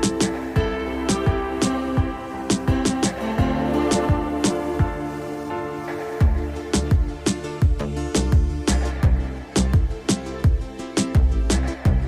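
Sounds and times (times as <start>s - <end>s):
pounding electronic beat: 0.0s - 5.2s, 6.2s - 12.0s.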